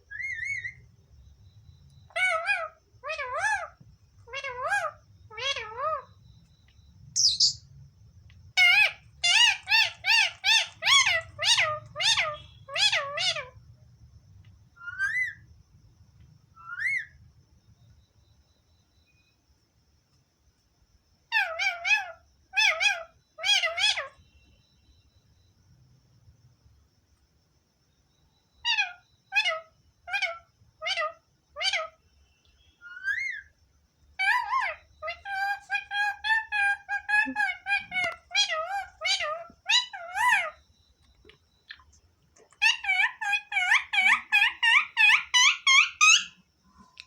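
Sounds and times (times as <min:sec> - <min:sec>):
parrot calling: 0:00.1 - 0:00.8, 0:02.0 - 0:06.2, 0:07.2 - 0:07.7, 0:08.5 - 0:13.6, 0:14.8 - 0:15.4, 0:16.6 - 0:17.2, 0:21.3 - 0:24.2, 0:28.6 - 0:32.0, 0:32.8 - 0:33.5, 0:34.2 - 0:40.6, 0:41.7 - 0:46.4.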